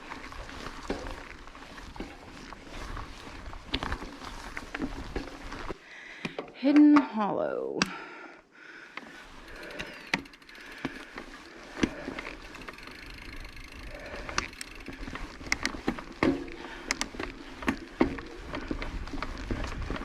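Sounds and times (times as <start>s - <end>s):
bike tyres on dirt trail: 0.0s - 7.1s, 7.9s - 20.0s
bike rattling clicks and knocks: 0.0s - 7.2s, 9.0s - 20.0s.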